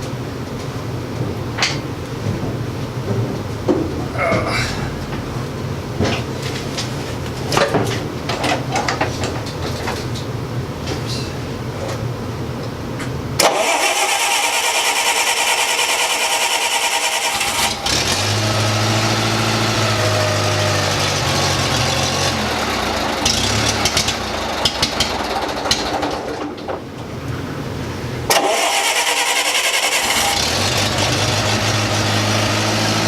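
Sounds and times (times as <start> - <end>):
engine cranking on starter: 13.4 - 26.6, 28.3 - 33.0
engine running: 13.4 - 33.0
engine clicks: 23.1 - 26.8, 28.3 - 31.2.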